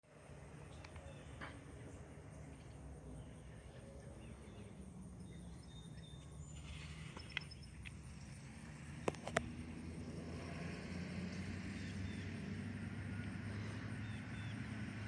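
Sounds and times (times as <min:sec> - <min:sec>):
faint bird chirps: 0:00.6 - 0:08.3.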